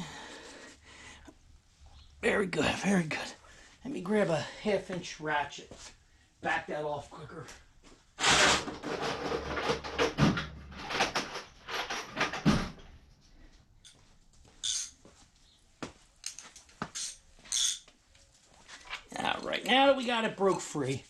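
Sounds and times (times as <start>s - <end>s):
metallic clicks and clinks: 14.6s - 15.0s, 16.2s - 17.9s.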